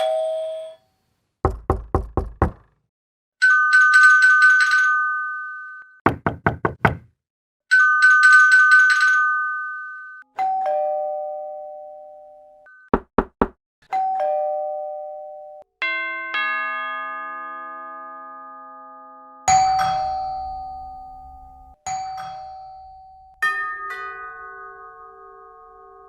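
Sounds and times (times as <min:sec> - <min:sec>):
doorbells chiming ding-dong: 0:00.0 - 0:00.9, 0:07.7 - 0:12.9, 0:13.9 - 0:26.0
knocks on door: 0:01.5 - 0:02.8, 0:06.1 - 0:07.2, 0:13.0 - 0:13.6.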